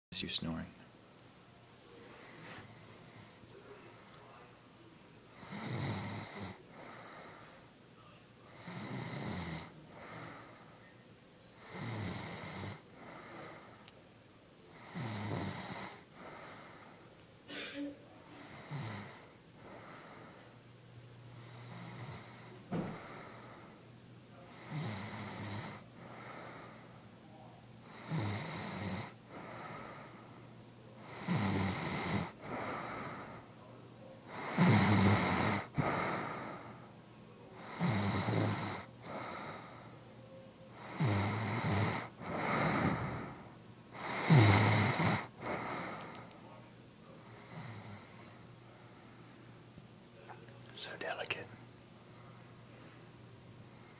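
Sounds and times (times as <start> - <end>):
woman snoring: 5.4 - 7.1, 8.6 - 10.5, 11.6 - 13.5, 14.7 - 16.4, 18.4 - 19.2, 21.4 - 23.6, 24.6 - 26.8, 27.9 - 30.1, 31.0 - 33.4, 34.3 - 36.7, 37.6 - 39.9, 40.8 - 43.4, 44.0 - 46.3, 47.4 - 48.3.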